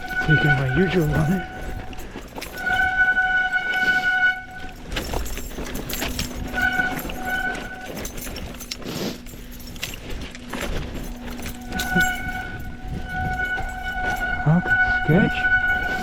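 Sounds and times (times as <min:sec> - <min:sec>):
bike disc brake squealing: 0:00.0 - 0:04.8, 0:11.6 - 0:16.0
bike rattling and rolling: 0:00.0 - 0:16.0.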